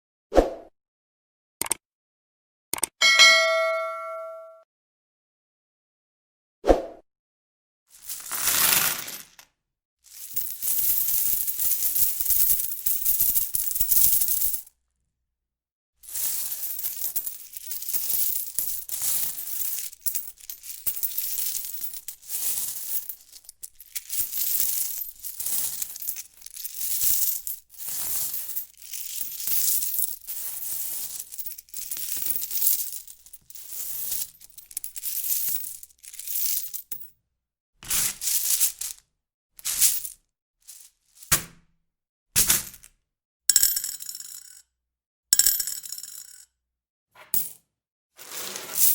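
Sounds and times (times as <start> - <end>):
coins jingling: 10.1 - 14.6, 16.1 - 37.0, 39.7 - 40.2.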